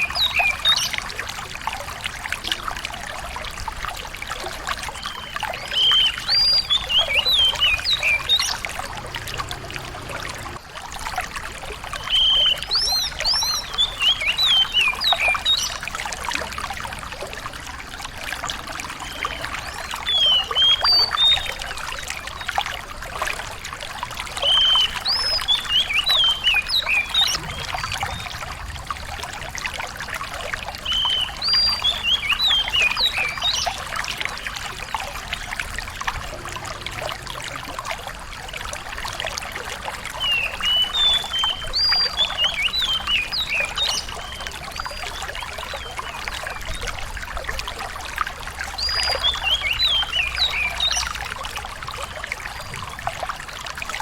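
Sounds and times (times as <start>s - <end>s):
running water: 0.0s - 54.0s
songbird singing high notes: 5.0s - 10.6s.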